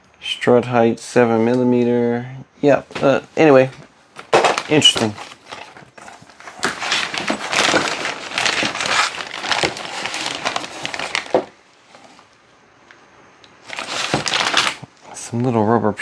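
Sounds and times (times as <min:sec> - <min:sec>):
plastic packaging crinkling: 0:02.9 - 0:12.4, 0:13.5 - 0:15.2.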